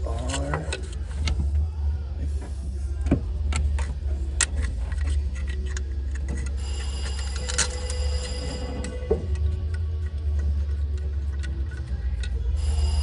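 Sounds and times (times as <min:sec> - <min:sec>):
steady low hum: 0:00.0 - 0:13.0
light clicks and taps on engine: 0:09.3 - 0:12.5.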